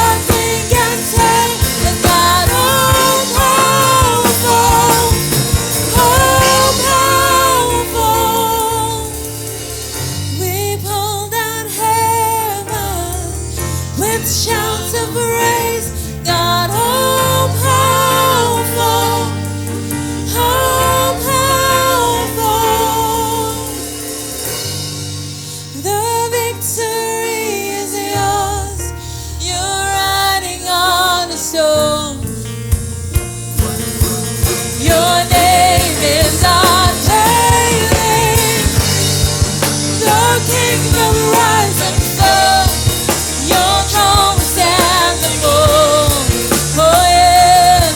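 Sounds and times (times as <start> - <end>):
drum kit beat: 0.0 - 11.6, 17.4 - 26.2, 32.7 - 47.9
band playing: 0.0 - 13.1, 14.0 - 28.0, 32.1 - 47.9
gospel worship singing: 0.0 - 47.9.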